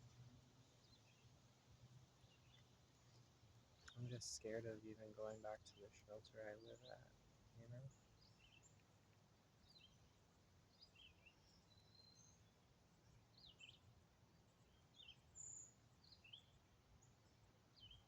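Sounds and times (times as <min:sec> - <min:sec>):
faint high bird chirps: 0:09.6 - 0:18.0.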